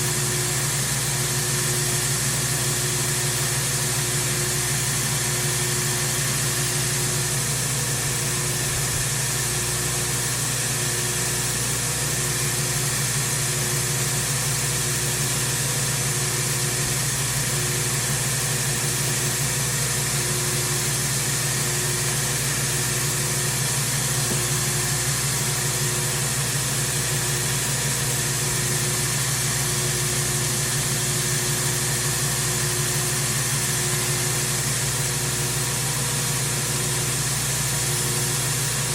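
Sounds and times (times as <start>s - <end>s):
grinder motor hum: 0.0s - 38.9s.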